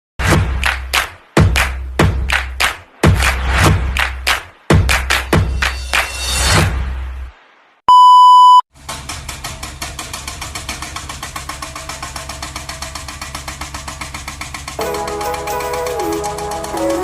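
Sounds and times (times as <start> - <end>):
loud electronic beep: 7.9 - 8.6
excavator diesel engine idling: 8.8 - 17.0.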